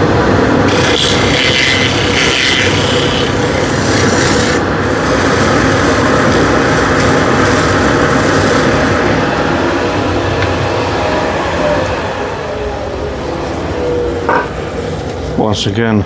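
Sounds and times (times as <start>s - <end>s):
wood lathe running: 0.0s - 15.3s
sandpaper rubbing spinning wood: 0.6s - 9.1s.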